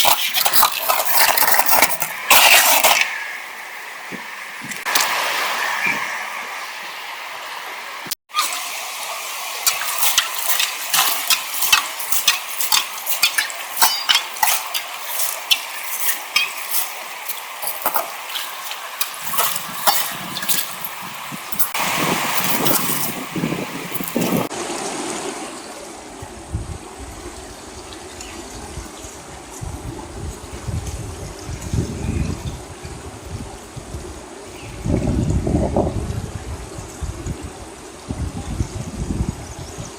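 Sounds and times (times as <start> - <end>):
small hard objects clattering: 0.0 - 3.2, 9.5 - 24.5
steady hiss: 0.0 - 24.5
creek water rushing: 0.0 - 26.1
wind on microphone: 9.7 - 24.5, 26.2 - 39.9.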